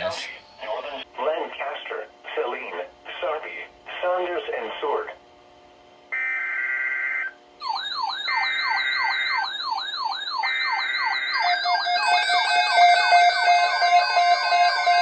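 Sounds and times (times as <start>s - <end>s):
rising siren-like alert sweep: 6.2s - 15.0s
warbling high alert tone: 6.2s - 15.0s.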